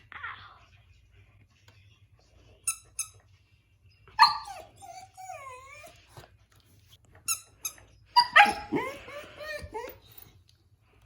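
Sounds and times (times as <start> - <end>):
puppy yipping and whining: 4.1 - 6.2, 8.2 - 10.3.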